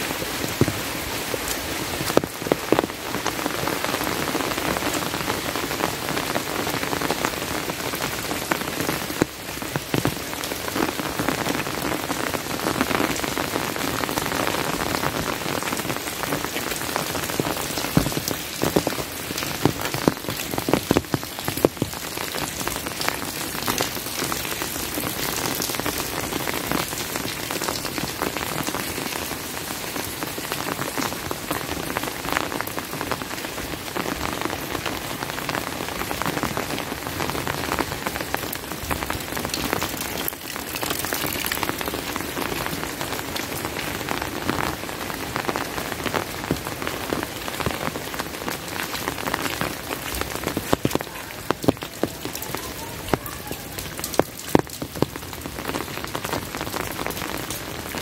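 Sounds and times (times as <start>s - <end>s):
sharp raindrop hits: 0.0s - 58.0s
steady rain falling: 0.0s - 58.0s.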